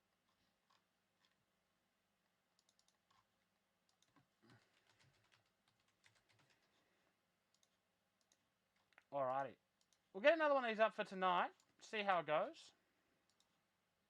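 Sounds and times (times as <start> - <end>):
keyboard typing clicks: 2.5 - 6.8, 7.5 - 10.0.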